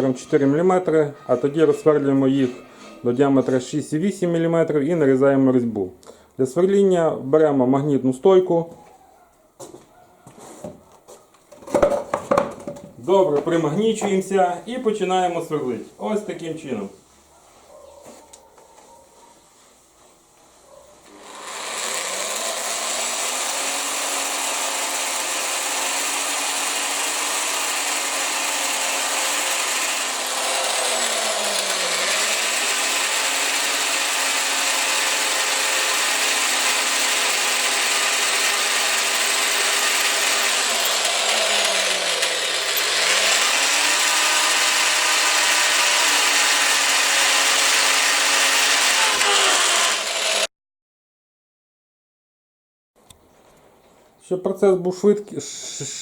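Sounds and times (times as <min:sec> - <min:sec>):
drill drilling into cast iron: 0:21.1 - 0:50.5.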